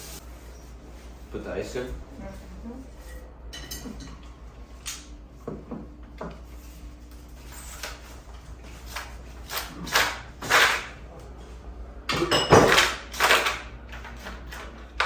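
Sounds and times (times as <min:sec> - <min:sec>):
kitchen knocks and clinks: 0:12.1 - 0:13.6.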